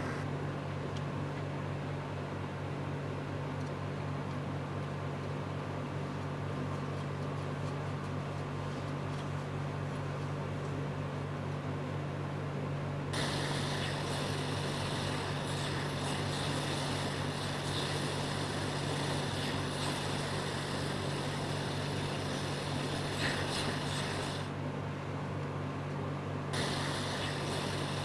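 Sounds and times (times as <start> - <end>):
low machine hum: 0.0 - 28.0
bright airy hiss: 13.2 - 24.5, 26.6 - 28.0
hiss: 13.2 - 24.6, 26.6 - 28.0.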